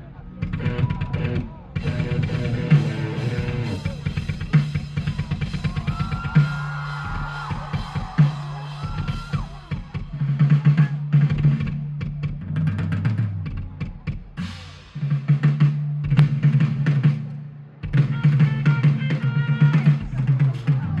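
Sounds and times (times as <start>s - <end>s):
rock band playing live: 0.0s - 12.2s
bass drum and snare hits: 0.4s - 21.0s.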